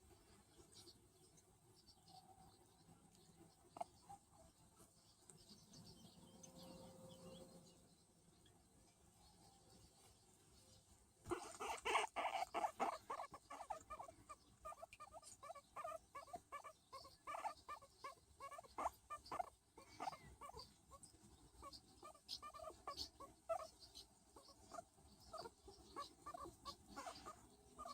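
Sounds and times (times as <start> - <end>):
guinea pig squeaking: 11.3 - 20.8, 21.6 - 27.9.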